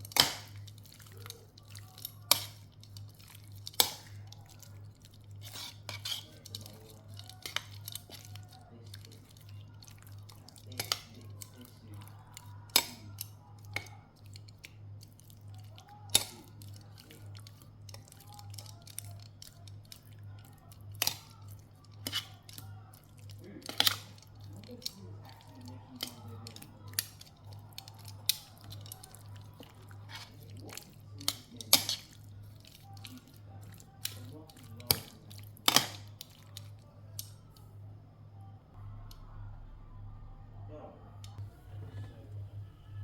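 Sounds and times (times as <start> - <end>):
low hum: 36.8 - 43.0.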